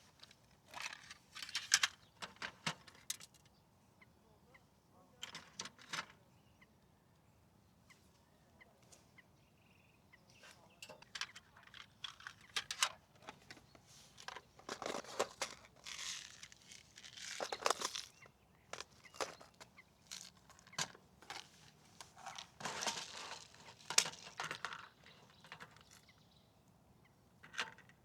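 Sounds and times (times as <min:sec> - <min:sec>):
fishing gear clicks and taps: 0:10.8 - 0:26.0
crinkling rustling handling noise: 0:11.1 - 0:26.0.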